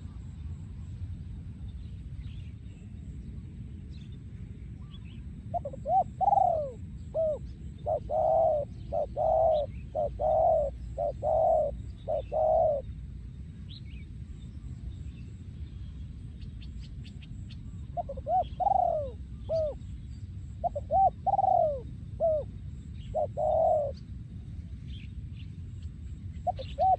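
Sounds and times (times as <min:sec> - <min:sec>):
dove cooing: 0:05.5 - 0:12.9, 0:18.0 - 0:19.8, 0:20.6 - 0:22.5, 0:23.1 - 0:24.0, 0:26.4 - 0:26.9
faint small bird chirps: 0:24.8 - 0:26.9.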